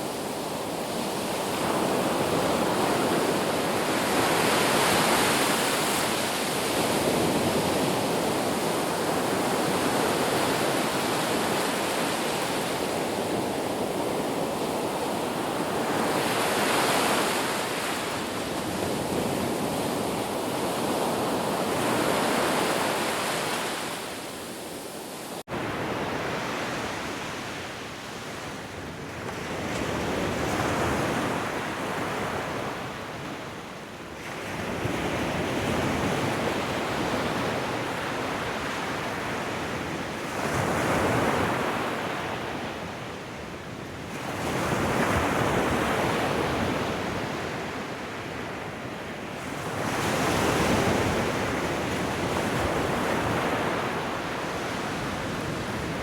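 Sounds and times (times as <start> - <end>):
ocean waves washing: 0.0 - 28.7.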